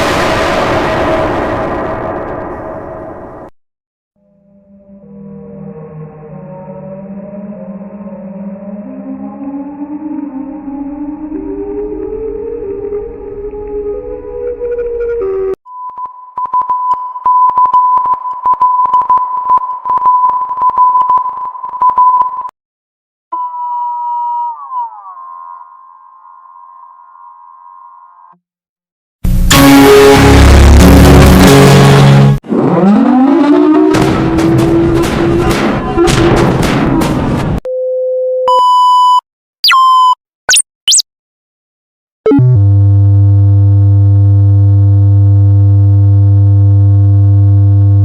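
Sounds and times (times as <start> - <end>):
harsh siren-like alarm: 4.6 - 15.6, 32.6 - 35.2
electronic alert beeps: 38.5 - 41.0
short sweeping chirps: 40.5 - 41.0.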